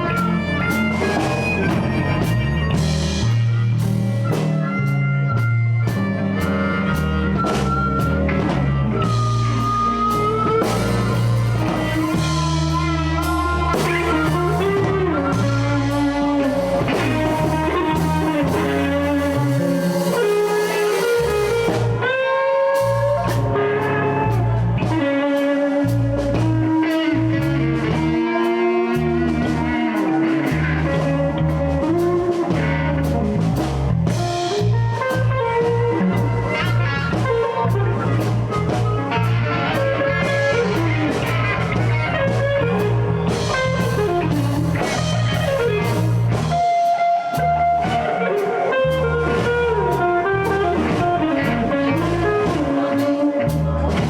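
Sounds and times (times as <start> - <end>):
blues band playing: 0.0 - 54.0
sliding lead guitar lines: 0.0 - 54.0.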